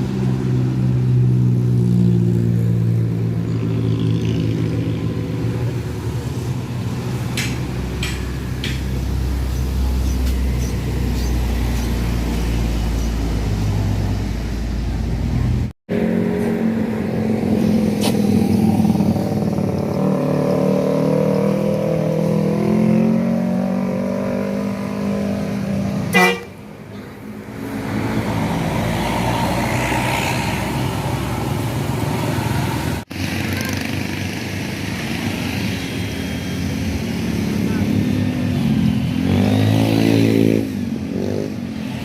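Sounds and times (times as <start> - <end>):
multi-tone musical air horn: 26.1 - 26.6.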